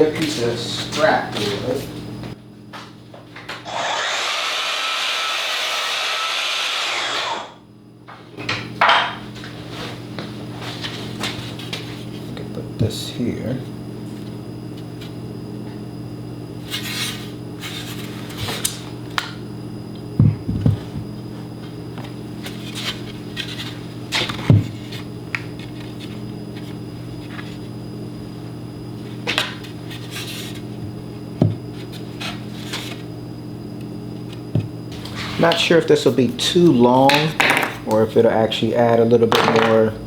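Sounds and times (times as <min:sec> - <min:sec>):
steady low hum: 0:07.6 - 0:40.0
wood knocks on workbench: 0:37.1 - 0:37.8, 0:39.3 - 0:39.8.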